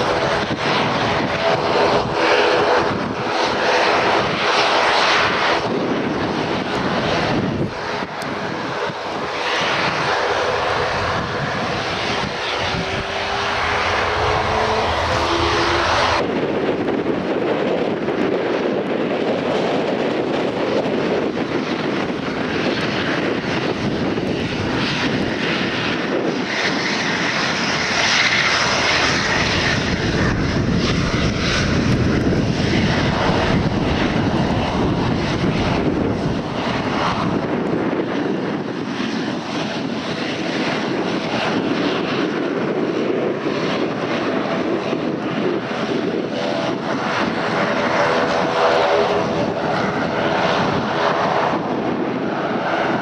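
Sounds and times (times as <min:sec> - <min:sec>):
airliner engines passing: 0:00.0 - 0:53.0.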